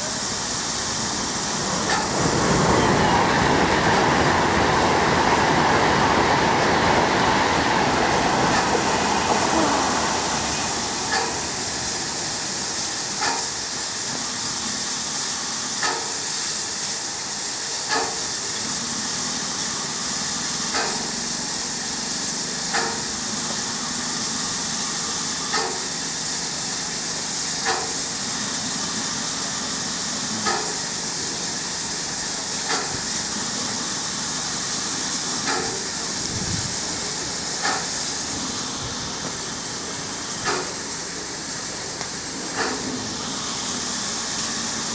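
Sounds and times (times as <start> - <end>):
wheels clicking over rail joint: 0.0 - 39.5, 40.3 - 44.9
steady hiss: 0.0 - 44.9
train wagons rolling past: 0.0 - 44.9.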